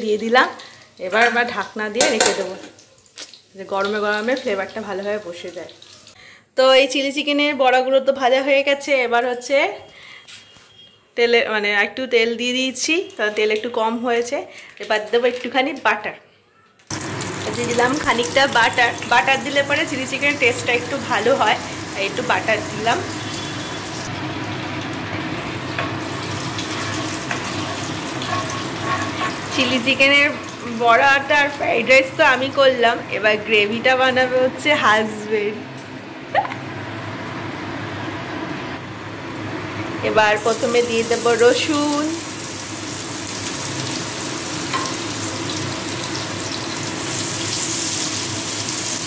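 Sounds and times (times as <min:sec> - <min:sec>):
oil and butter sizzling in pan: 0:00.0 - 0:06.2, 0:16.9 - 0:32.8, 0:39.3 - 0:49.0
stirring knocks: 0:25.7 - 0:30.4.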